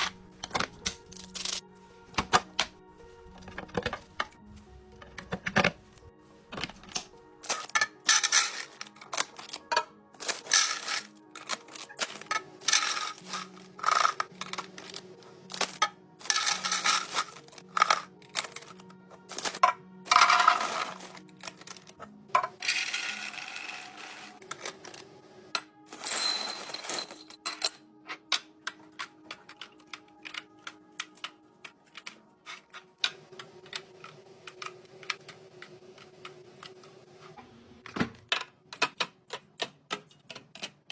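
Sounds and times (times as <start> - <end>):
small hard objects clattering: 6.5 - 25.0, 25.9 - 27.6
containers rattling: 6.6 - 25.0, 25.9 - 27.5.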